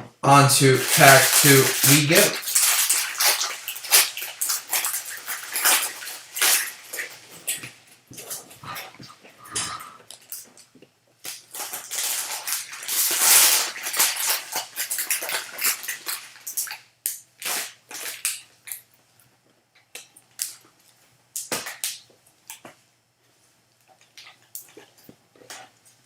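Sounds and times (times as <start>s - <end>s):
cards rustling and clicking: 0.6s - 7.1s
foil wrapper tearing and crinkling: 0.6s - 7.8s, 11.2s - 18.8s.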